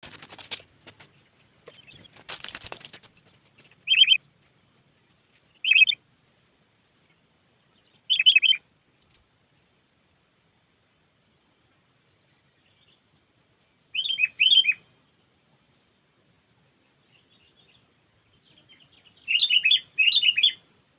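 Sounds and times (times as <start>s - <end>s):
brief rustle: 0.0s - 5.6s
bird chirping calls: 1.0s - 4.2s, 5.0s - 6.0s, 7.0s - 8.6s, 13.9s - 14.9s, 16.8s - 20.7s.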